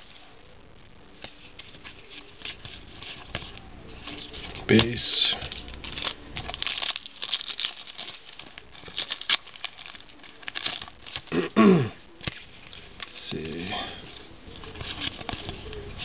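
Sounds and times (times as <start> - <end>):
cards flipped by hand: 1.2 - 11.4.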